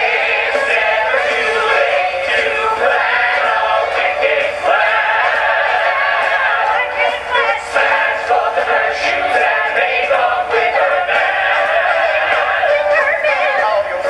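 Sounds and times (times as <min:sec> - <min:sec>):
backing music track: 0:00.0 - 0:14.0.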